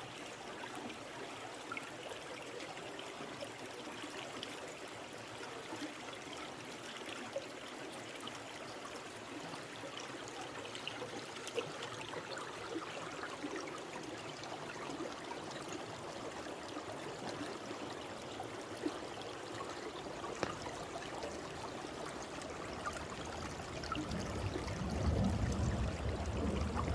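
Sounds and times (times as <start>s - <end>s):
stream trickling: 0.0s - 26.9s
low rumble: 23.3s - 26.9s.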